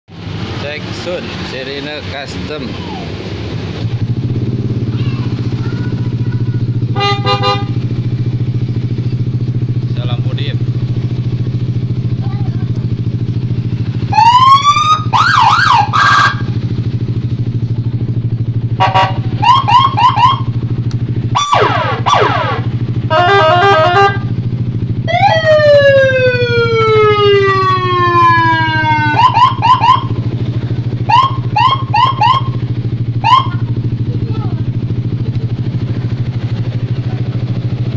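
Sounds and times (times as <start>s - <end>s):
electronic siren cycling tones: 14.1s - 16.5s, 18.9s - 20.6s, 21.3s - 24.2s, 25.0s - 30.2s, 31.0s - 32.6s, 33.2s - 33.6s.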